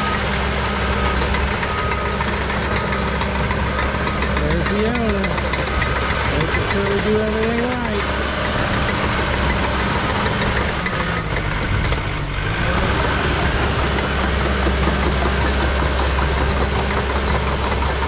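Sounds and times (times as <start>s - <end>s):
diesel engine running with clatter: 0.0s - 18.0s.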